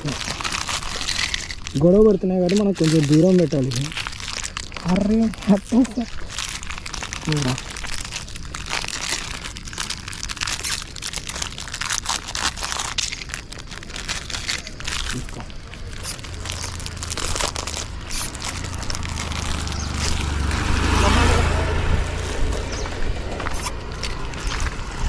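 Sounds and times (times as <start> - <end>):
dogs crunching dry biscuits: 0.0 - 21.4, 22.2 - 25.0.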